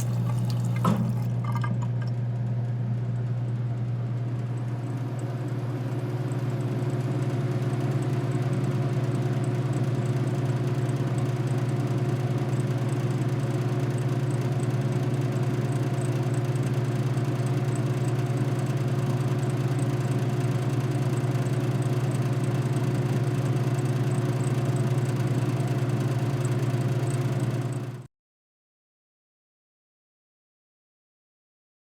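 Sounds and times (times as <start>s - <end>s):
compressor humming: 0.0s - 2.8s.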